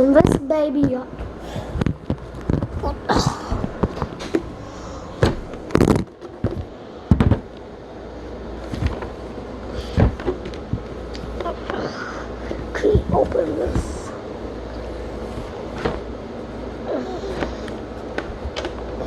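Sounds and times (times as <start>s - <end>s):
rustling: 12.4s - 19.0s.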